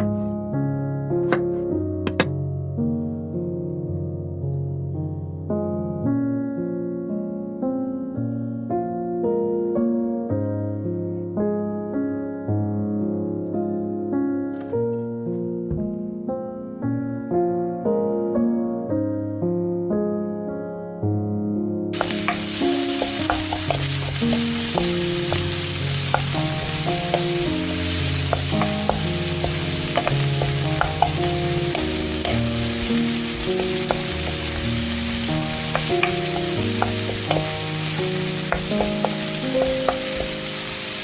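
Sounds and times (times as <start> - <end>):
utensil clicking against pan: 1.3 - 2.3, 22.0 - 40.7
food sizzling in a frying pan: 22.0 - 41.0
soft keyboard music: 22.0 - 41.0.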